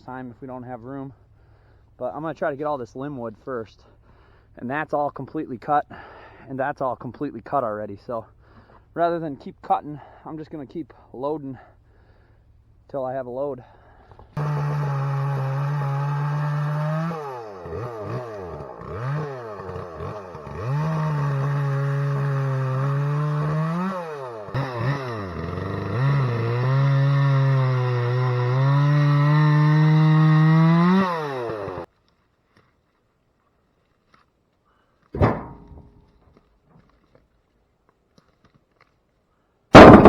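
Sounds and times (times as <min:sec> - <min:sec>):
chainsaw revving: 0:14.4 - 0:31.9, 0:39.8 - 0:40.0.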